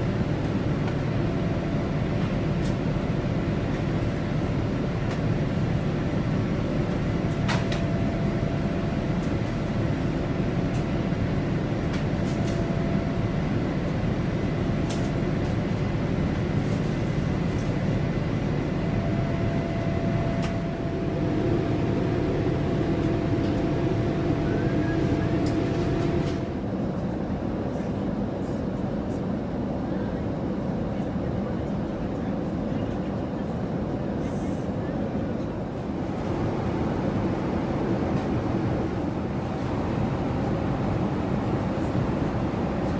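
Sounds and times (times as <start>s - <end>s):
airliner cabin rumble: 0.0s - 26.5s, 35.6s - 42.9s
faint steady hum: 35.7s - 42.9s.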